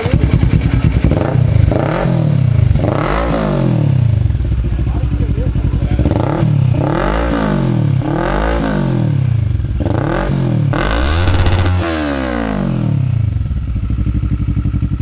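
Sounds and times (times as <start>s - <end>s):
engine idling: 0.0s - 1.8s, 4.0s - 6.2s, 10.8s - 11.9s, 13.1s - 15.0s
motorcycle engine revving: 0.0s - 15.0s.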